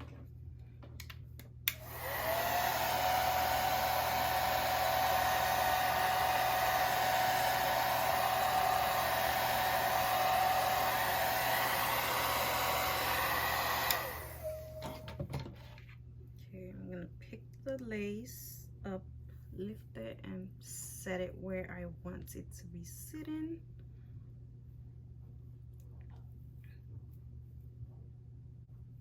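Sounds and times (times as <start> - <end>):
hair dryer switch click: 1.7 - 2.5, 12.6 - 15.1
hair dryer blowing with motor whine: 1.7 - 15.2.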